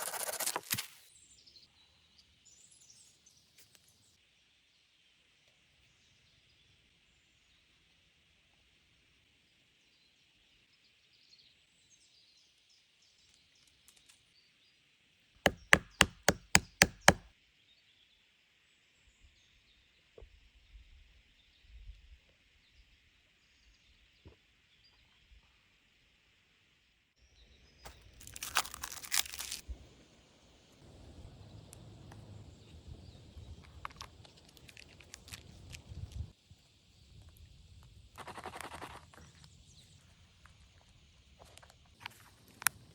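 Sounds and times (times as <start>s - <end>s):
sharp knocks: 15.5s - 17.2s.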